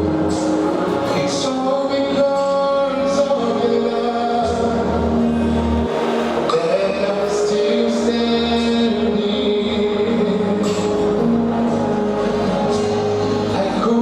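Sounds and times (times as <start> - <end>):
band with steady bass: 0.0 - 14.0
gospel group singing: 0.0 - 14.0.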